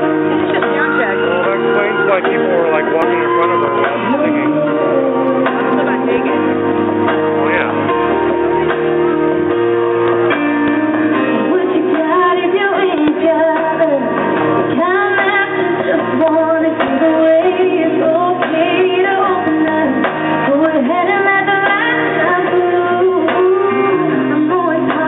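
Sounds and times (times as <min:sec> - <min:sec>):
live band playing slow song: 0:00.0 - 0:25.0
woman singing: 0:03.9 - 0:06.1, 0:11.2 - 0:25.0.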